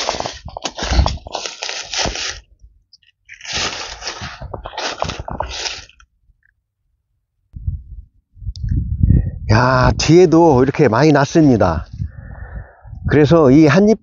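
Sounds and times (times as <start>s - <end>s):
footsteps crunching through dry leaves: 0.0s - 2.5s, 3.3s - 6.0s
low muffled rumble: 7.6s - 10.1s.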